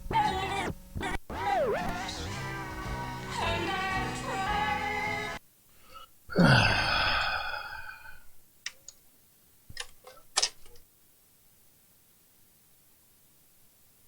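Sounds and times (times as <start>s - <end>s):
music from tape: 0.0s - 5.4s
breathy sound falling in pitch: 6.3s - 8.3s.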